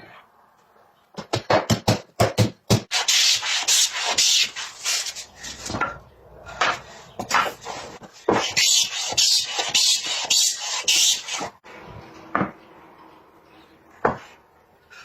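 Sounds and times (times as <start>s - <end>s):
sanding wood by hand: 2.8s - 5.8s, 6.6s - 11.6s.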